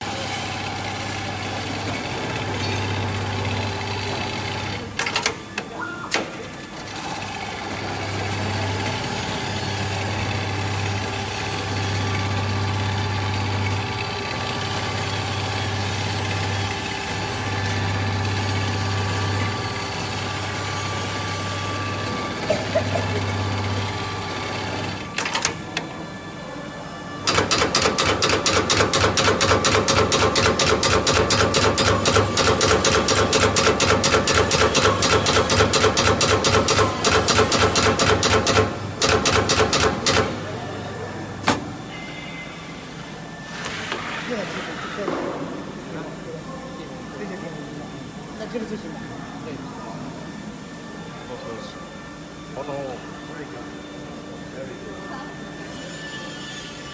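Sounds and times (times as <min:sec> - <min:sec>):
sewing machine motor humming: 0:27.2 - 0:40.6
sewing machine stitching clatter: 0:27.3 - 0:40.4.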